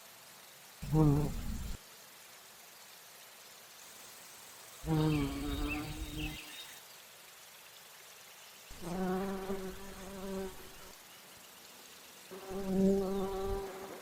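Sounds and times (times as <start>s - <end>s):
bumblebee buzzing: 0.8s - 1.8s, 4.4s - 6.8s, 8.7s - 11.0s, 12.2s - 14.0s.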